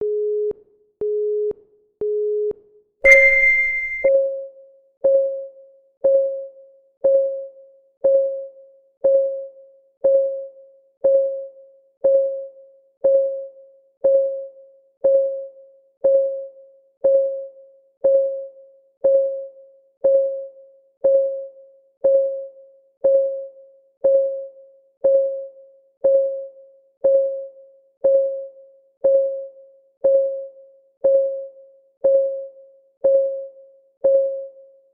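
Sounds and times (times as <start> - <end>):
higher beep: 3.1 - 4.1
short low beeps: 3.1 - 4.1.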